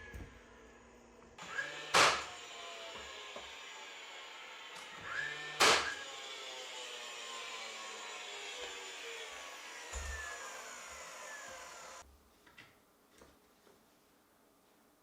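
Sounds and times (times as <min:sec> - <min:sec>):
power tool motor winding down: 0:01.4 - 0:12.0.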